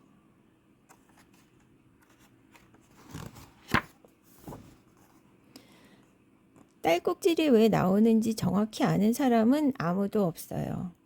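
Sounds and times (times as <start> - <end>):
book page rustling: 0.9 - 5.3.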